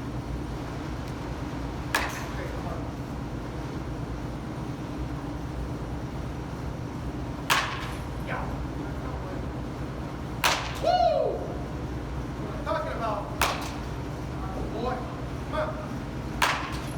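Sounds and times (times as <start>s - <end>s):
baseball bat cracking ball: 1.9s - 2.6s, 7.4s - 8.2s, 10.4s - 10.9s, 13.4s - 14.0s, 16.4s - 16.9s.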